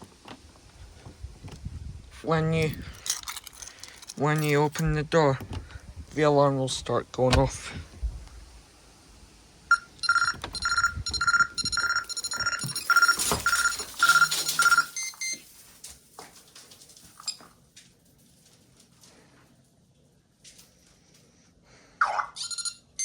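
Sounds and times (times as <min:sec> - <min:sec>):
intruder alarm beeping: 0:09.7 - 0:15.4.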